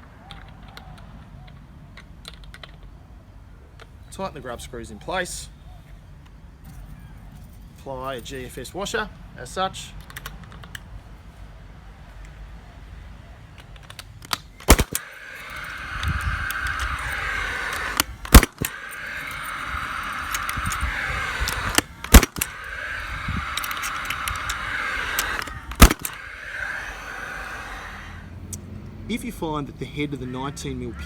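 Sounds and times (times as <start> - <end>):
nail gun firing: 14.3 - 15.1, 16.5 - 18.8, 20.3 - 22.6, 23.6 - 26.2
steady whir: 14.6 - 29.0.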